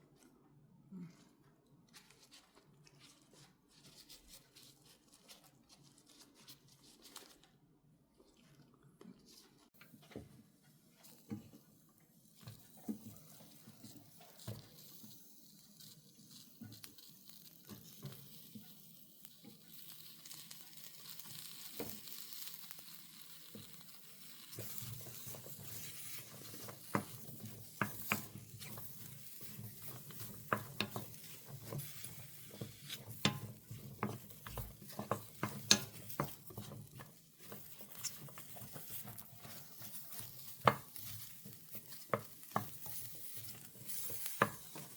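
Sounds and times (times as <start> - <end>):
mushrooms sizzling in a pan: 12.4 - 44.9
utensil clicking against pan: 24.6 - 41.2.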